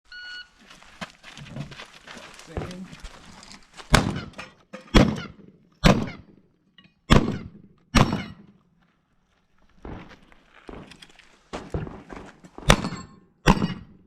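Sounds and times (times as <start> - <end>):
shotgun shots echoing: 3.9 - 6.3, 7.1 - 8.4, 12.6 - 14.0.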